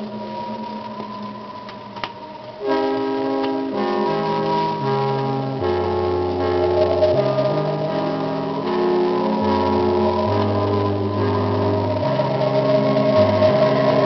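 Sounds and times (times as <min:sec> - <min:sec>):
instrumental chords from vinyl record: 0:00.0 - 0:14.0.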